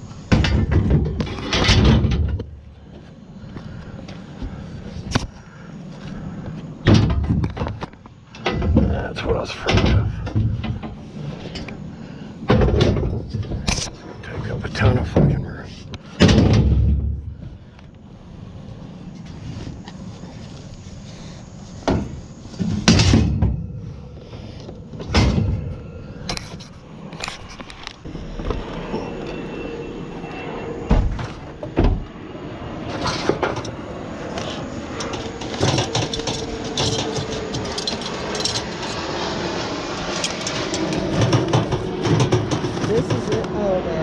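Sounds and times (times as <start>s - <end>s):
metal rattling and rumbling: 0.0s - 29.2s, 32.8s - 43.8s
scrap metal banging and clanking: 0.3s - 2.7s, 21.8s - 27.6s, 32.8s - 39.2s, 40.0s - 43.5s.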